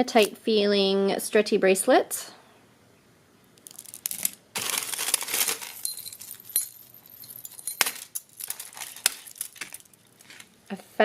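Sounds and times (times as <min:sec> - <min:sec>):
jewelry clinking and jangling: 0:03.6 - 0:10.5
metal or glass ringing: 0:05.8 - 0:08.1.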